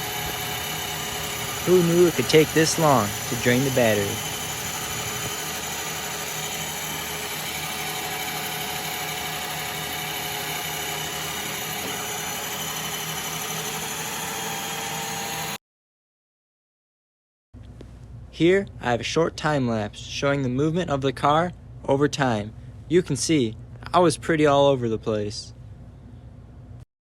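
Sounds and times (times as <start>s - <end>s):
treadmill belt and tyre noise: 0.0s - 15.5s
electric motors whining: 0.0s - 15.6s.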